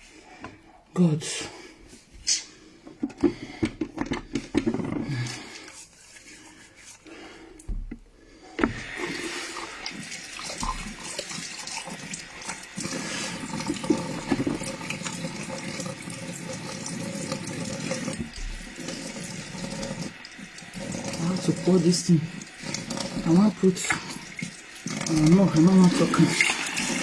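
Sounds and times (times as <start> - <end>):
tap water running into sink: 3.0 - 5.6, 8.6 - 27.0.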